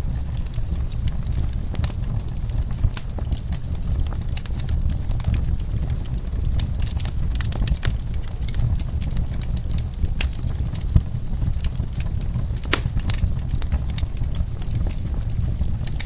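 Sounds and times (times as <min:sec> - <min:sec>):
fire popping and snapping: 0:12.7 - 0:13.0
wood fire crackling: 0:12.7 - 0:13.0.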